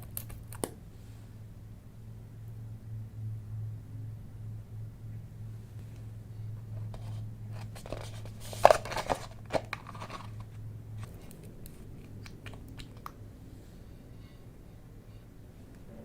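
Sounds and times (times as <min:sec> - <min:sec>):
scattered clicks and crackles: 0:00.0 - 0:00.8, 0:07.6 - 0:13.2
packaging crinkling: 0:06.9 - 0:13.1.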